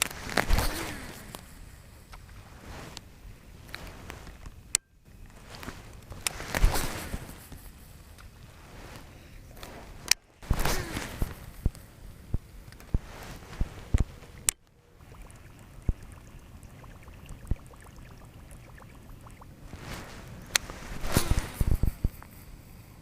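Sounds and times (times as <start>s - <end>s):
swishing rush: 19.6s - 22.2s.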